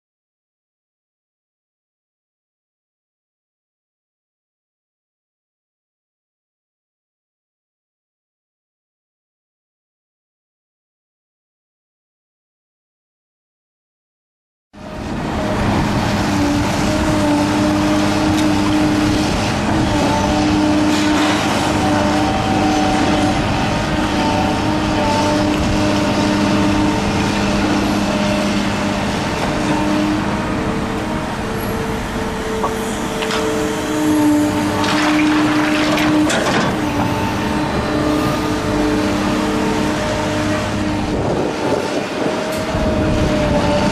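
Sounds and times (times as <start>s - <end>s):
excavator diesel engine: 14.8s - 43.9s
machine whine: 14.8s - 43.9s.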